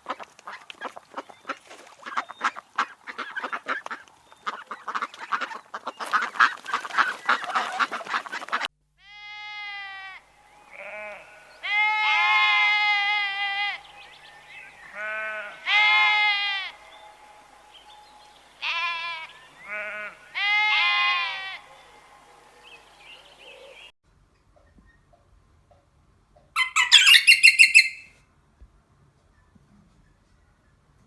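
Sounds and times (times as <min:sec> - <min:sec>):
goat or sheep bleating: 0:09.0 - 0:13.8, 0:14.9 - 0:16.8, 0:18.6 - 0:21.6
quick high chirps: 0:26.6 - 0:28.1.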